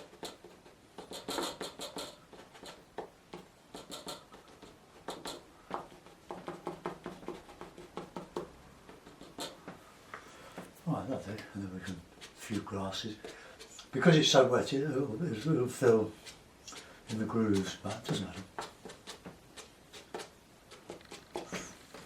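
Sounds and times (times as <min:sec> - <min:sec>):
tool scraping wet paper: 0:11.7 - 0:14.5, 0:15.2 - 0:22.0.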